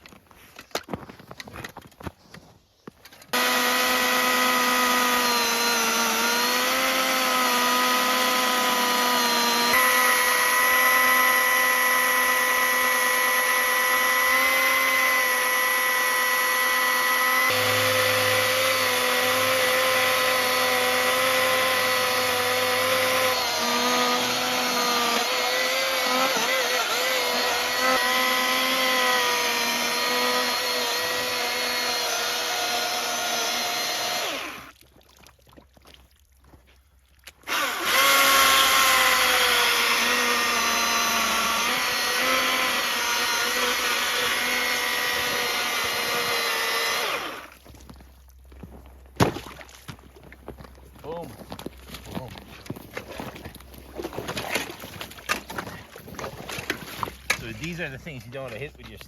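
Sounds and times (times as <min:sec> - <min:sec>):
snowmobile engine whine: 0:15.3 - 0:28.5.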